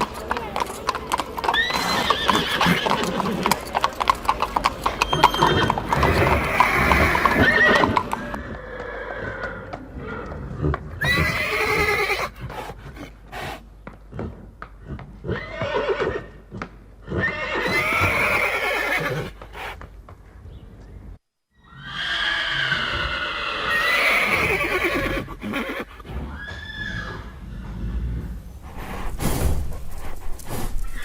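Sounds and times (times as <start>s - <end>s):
hooves clopping: 0.0s - 17.0s, 18.0s - 21.2s, 24.3s - 31.0s
horse neighing: 1.1s - 12.4s, 14.9s - 16.4s, 17.0s - 19.4s, 21.6s - 28.0s.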